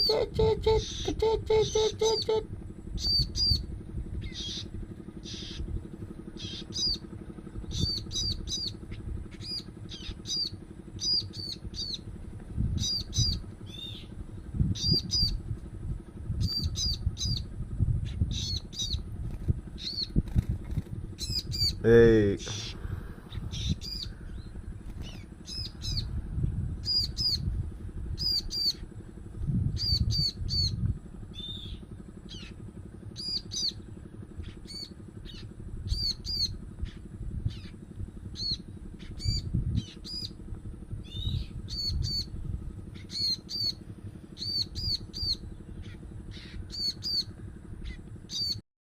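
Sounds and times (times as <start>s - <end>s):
low rumble: 0.0s - 48.6s
bird chick chirping: 3.0s - 5.6s, 7.7s - 12.0s, 12.8s - 14.1s, 21.2s - 21.8s, 22.5s - 26.1s, 41.1s - 42.3s, 43.0s - 43.8s, 44.4s - 48.6s.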